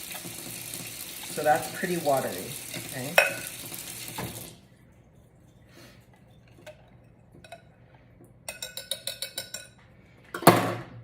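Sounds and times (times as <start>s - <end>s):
whisk clinking against bowl rim: 8.5s - 9.8s.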